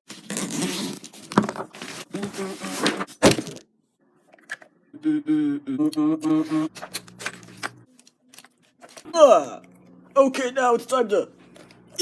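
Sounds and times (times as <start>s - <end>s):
person humming: 4.9s - 6.8s.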